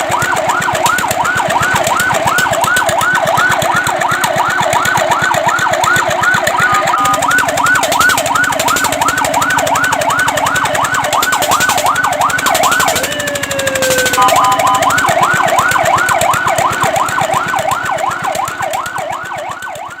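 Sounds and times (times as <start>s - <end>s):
fire truck siren yelping: 0.0s - 20.0s
short falling tone: 14.0s - 15.1s.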